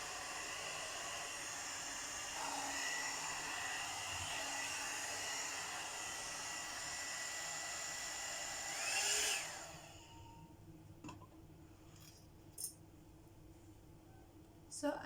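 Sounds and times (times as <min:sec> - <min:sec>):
hot air brush running: 0:00.0 - 0:10.3.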